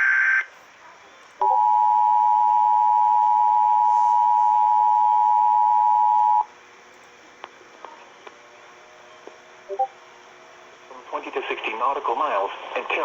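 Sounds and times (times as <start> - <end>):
two-tone alert signal: 9.7 - 9.9.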